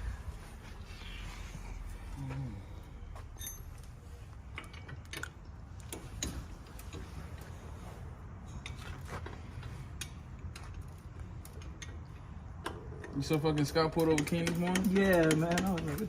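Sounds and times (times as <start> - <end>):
low steady rumble: 0.0 - 16.0
tools clicking and knocking: 4.5 - 7.4, 8.6 - 16.0.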